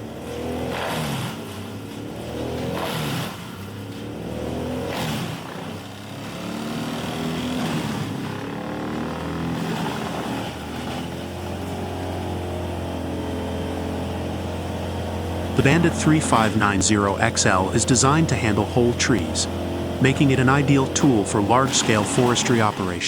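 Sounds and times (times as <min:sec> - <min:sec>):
wood chipper engine: 0:00.0 - 0:23.0.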